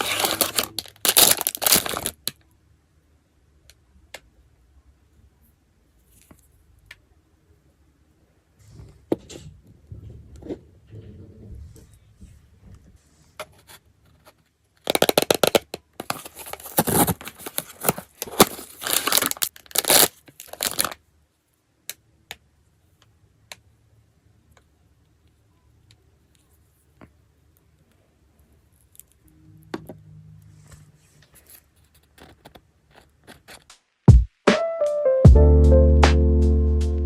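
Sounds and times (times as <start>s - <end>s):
packaging rustling and clicking: 0.0s - 2.4s, 14.8s - 21.0s
wrapper tearing: 0.0s - 2.4s, 14.8s - 21.0s.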